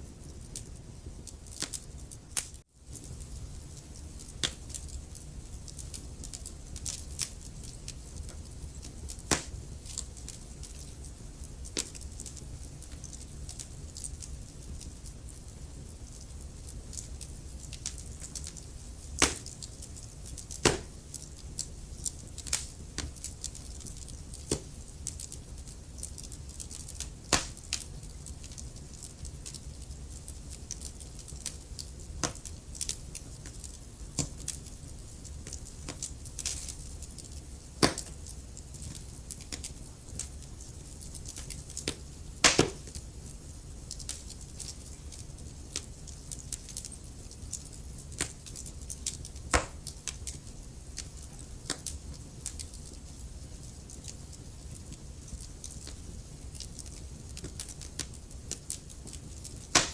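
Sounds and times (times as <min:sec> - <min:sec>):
fire rumbling: 0:00.0 - 0:59.9
logs crackling: 0:00.4 - 0:15.6, 0:16.2 - 0:59.9
loud sharp pops: 0:09.3 - 0:09.6, 0:19.2 - 0:19.5, 0:20.6 - 0:21.0, 0:27.3 - 0:27.6, 0:37.8 - 0:38.1, 0:42.4 - 0:42.9, 0:49.5 - 0:49.8.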